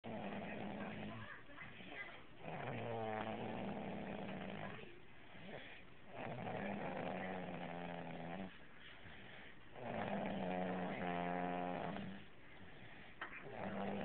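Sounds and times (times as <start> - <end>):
person snoring: 2.4 - 4.7, 5.4 - 8.6, 9.8 - 12.3, 13.4 - 14.0.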